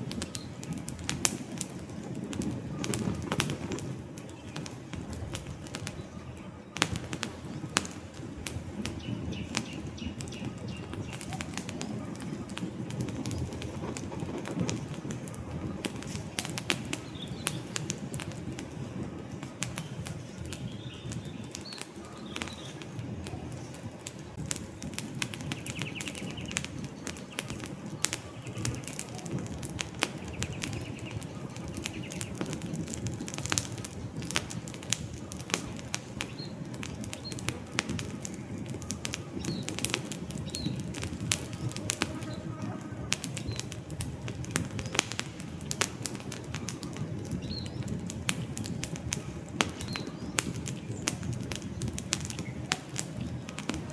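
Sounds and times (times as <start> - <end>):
campfire crackling and popping: 0.0 - 53.9
low rush of flame: 0.0 - 53.9.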